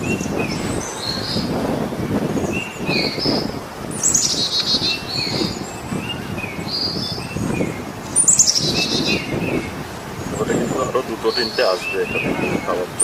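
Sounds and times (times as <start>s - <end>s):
small birds chirping: 0.0s - 13.0s
bird trill: 2.4s - 10.4s.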